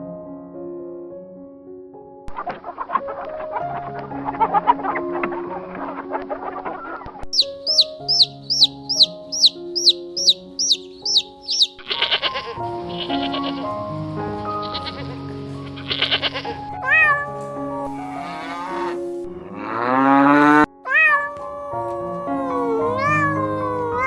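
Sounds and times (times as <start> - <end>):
background music: 7.3 - 24.0
sheep bleating: 15.9 - 19.9, 20.9 - 24.0.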